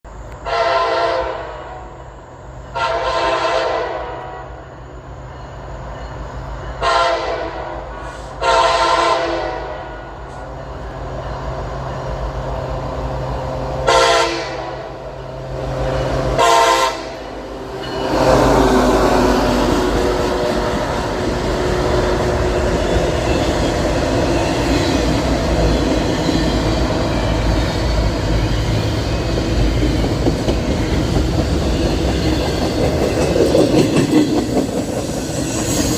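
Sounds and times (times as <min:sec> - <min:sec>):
train rushing: 0:00.1 - 0:35.9
locomotive horn blasts: 0:00.4 - 0:01.9, 0:02.7 - 0:04.6, 0:06.8 - 0:07.8, 0:08.4 - 0:10.1, 0:13.8 - 0:19.2.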